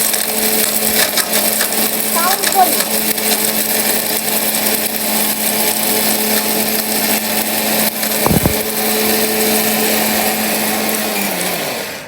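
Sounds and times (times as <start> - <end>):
mixer grinder motor whirring: 0.0 - 12.0
low thump: 8.2 - 8.7.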